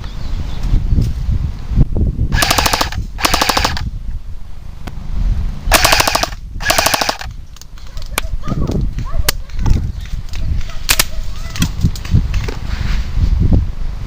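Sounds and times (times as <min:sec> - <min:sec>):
airsoft gun rapid bursts: 0:02.4 - 0:03.8, 0:05.7 - 0:07.3.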